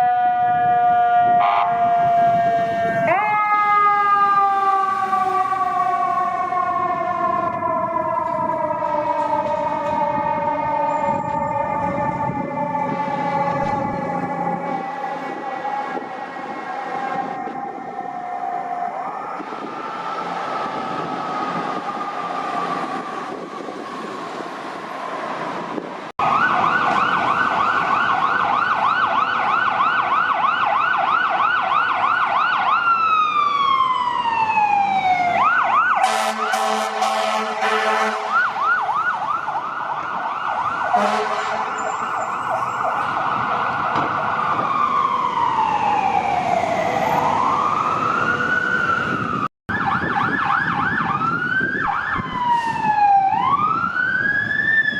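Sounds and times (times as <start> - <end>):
emergency vehicle sirens: 0.0 - 54.9
harsh horn blasts: 36.0 - 38.5, 40.9 - 42.1.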